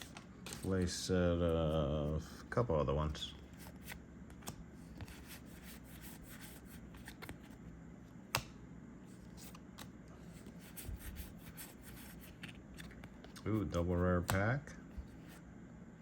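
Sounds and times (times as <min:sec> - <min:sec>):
cards sliding and flicking: 0:03.4 - 0:07.6, 0:08.2 - 0:15.4.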